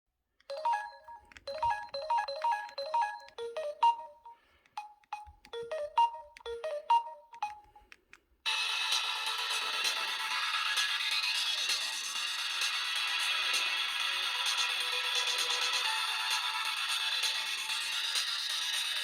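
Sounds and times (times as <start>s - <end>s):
mobile phone ringtone melody: 0.5s - 7.8s.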